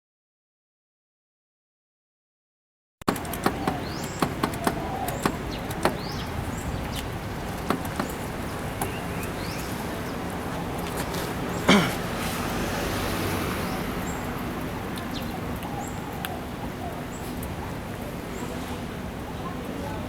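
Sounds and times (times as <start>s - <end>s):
birds chirping: 3.1s - 14.4s.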